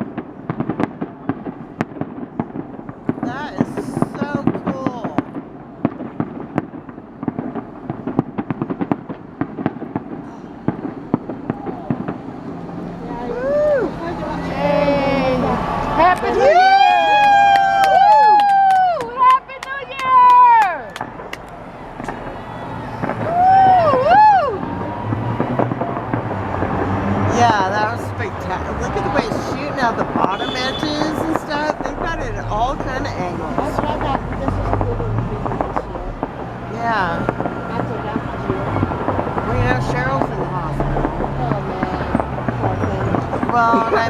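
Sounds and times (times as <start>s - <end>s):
fireworks bangs and crackling pops: 0.0s - 14.5s, 15.6s - 44.0s
person whooping: 13.2s - 14.0s, 16.4s - 19.1s, 23.2s - 24.7s
steady rumble: 20.9s - 44.0s.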